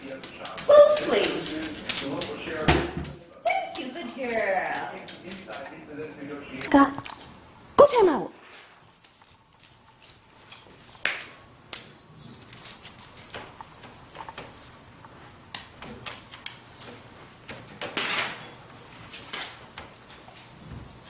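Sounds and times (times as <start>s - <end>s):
dog claws clicking on hard floor: 0.0s - 7.3s, 8.8s - 18.4s
dog scuffling: 0.0s - 7.3s, 8.4s - 11.4s, 12.2s - 21.0s.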